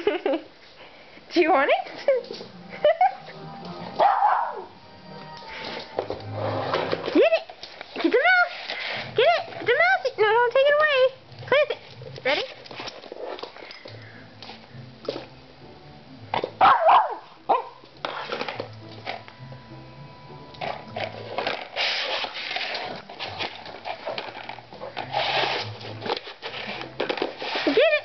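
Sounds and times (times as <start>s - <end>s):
dog yelping: 4.0s - 4.7s, 16.6s - 17.8s.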